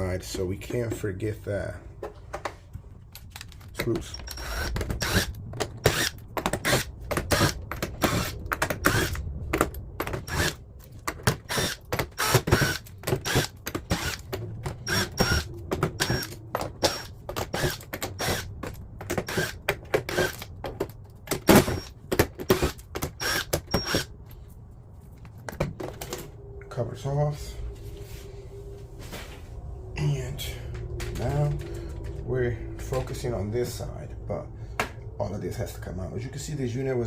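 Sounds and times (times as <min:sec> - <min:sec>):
screwdriver clicks and rattling screws: 0:03.1 - 0:24.4.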